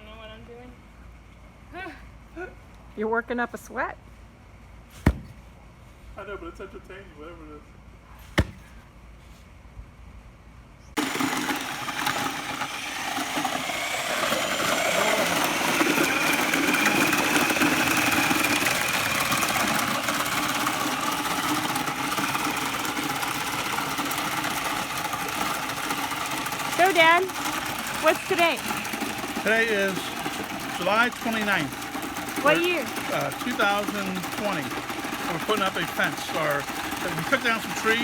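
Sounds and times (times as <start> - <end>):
motor-driven machine running: 11.0 - 38.0.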